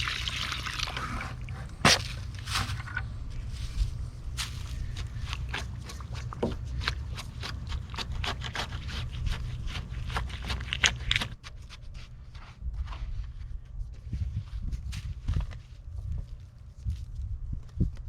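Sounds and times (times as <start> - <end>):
low rumble: 0.0 - 11.4
rustling and crackling: 0.0 - 17.8.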